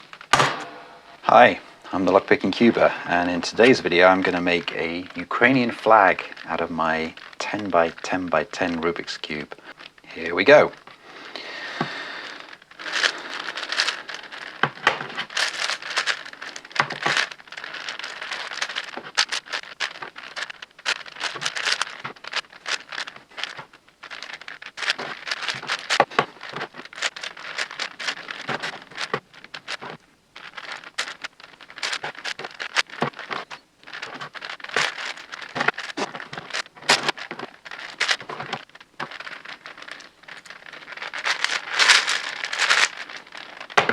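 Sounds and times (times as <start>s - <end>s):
puzzle cube clicking as turned: 11.8s - 43.9s.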